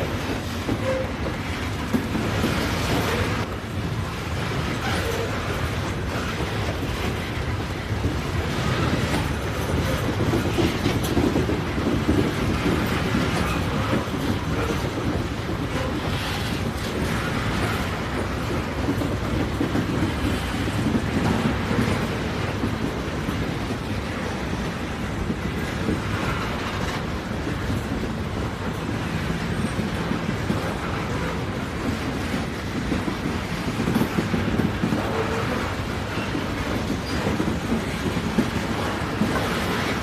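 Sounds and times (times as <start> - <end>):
train rumbling along track: 0.0 - 40.0.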